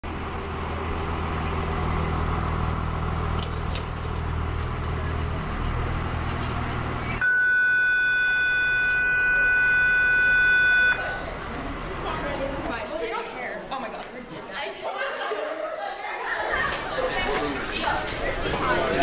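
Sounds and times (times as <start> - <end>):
vehicle engine idling: 0.0 - 7.2, 10.7 - 13.0
electronic bell or buzzer tone: 7.2 - 11.0.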